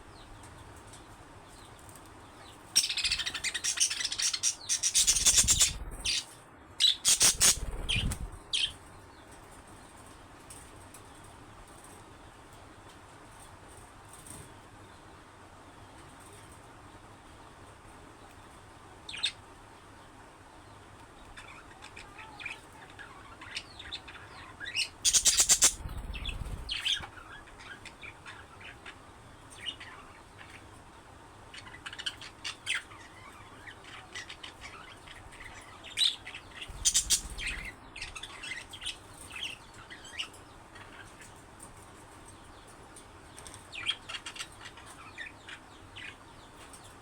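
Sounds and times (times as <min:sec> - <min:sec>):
budgerigars chirping: 0:02.8 - 0:08.8, 0:24.4 - 0:28.8, 0:36.0 - 0:40.3
wings flapping: 0:04.4 - 0:06.3, 0:07.1 - 0:08.8, 0:25.1 - 0:27.1, 0:36.7 - 0:38.2.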